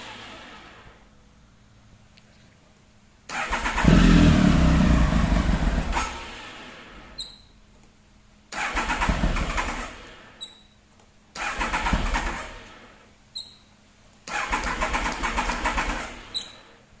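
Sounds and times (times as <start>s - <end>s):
motorcycle starter cranking: 3.3s - 7.5s, 8.5s - 10.6s, 11.3s - 12.8s, 14.2s - 16.7s.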